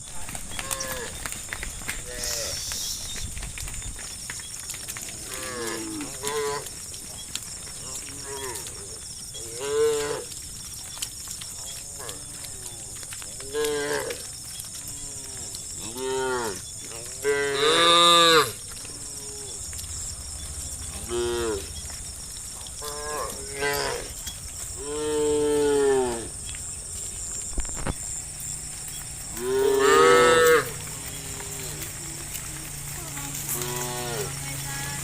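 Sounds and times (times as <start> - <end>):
cattle mooing: 21.0 - 21.7, 29.3 - 31.9, 33.5 - 34.6.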